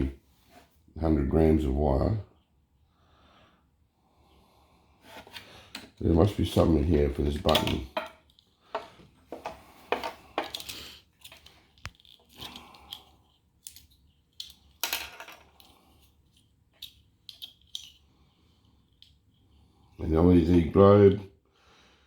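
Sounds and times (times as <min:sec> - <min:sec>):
hard plastic parts clattering: 0:07.1 - 0:18.0.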